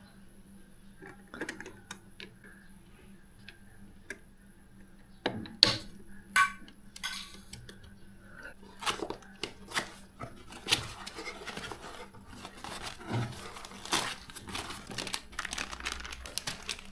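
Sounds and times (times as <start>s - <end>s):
hardware clicks and taps: 5.2s - 8.0s
rustling scrapes: 8.6s - 16.9s.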